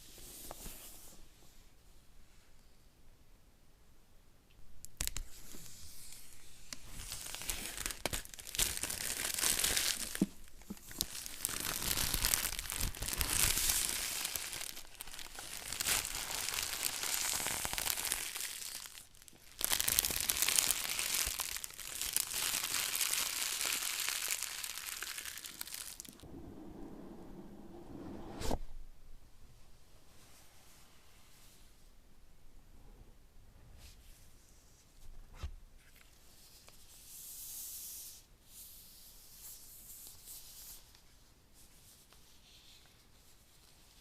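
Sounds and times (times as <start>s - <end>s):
packaging tearing and crinkling: 6.9s - 26.2s.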